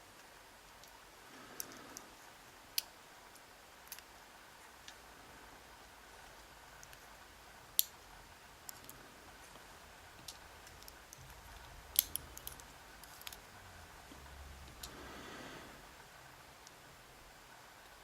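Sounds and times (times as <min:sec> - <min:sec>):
metallic clicks of lock parts: 0:03.8 - 0:04.1, 0:10.2 - 0:13.4.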